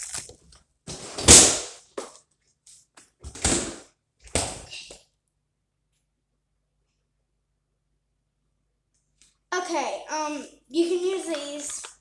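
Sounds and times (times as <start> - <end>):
plastic cups tearing apart: 0.0 - 0.6.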